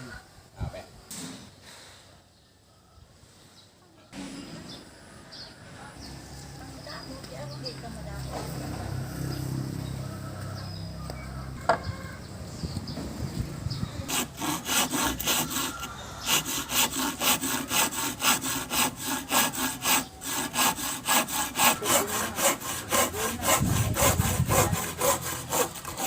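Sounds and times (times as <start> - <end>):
hand saw cutting wood: 14.1 - 26.0.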